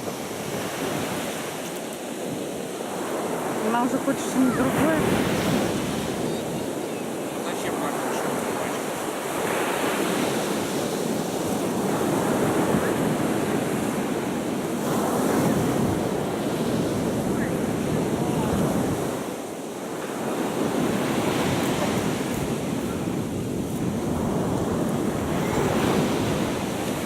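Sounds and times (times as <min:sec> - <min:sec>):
sea waves washing on shore: 0:00.0 - 0:27.0
wind buffeting microphone: 0:00.0 - 0:27.0.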